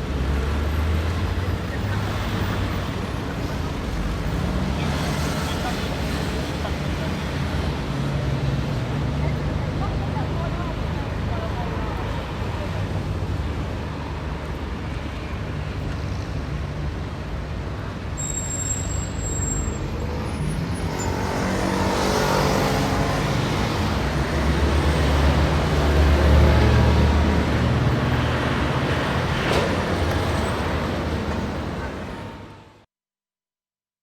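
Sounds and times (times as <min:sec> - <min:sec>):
passing vehicles: 0:00.0 - 0:32.8
brief high squeal: 0:18.2 - 0:21.4.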